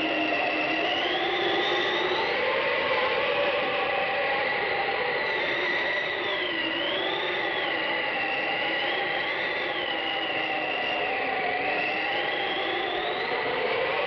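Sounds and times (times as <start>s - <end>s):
wavering whistling tones: 0.0s - 2.6s, 3.3s - 14.0s.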